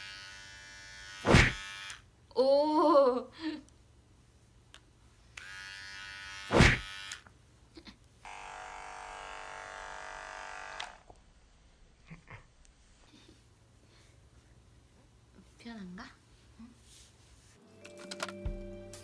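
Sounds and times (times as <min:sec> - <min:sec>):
electric hair clippers buzzing: 0:00.0 - 0:02.1, 0:05.4 - 0:07.3, 0:08.3 - 0:11.1.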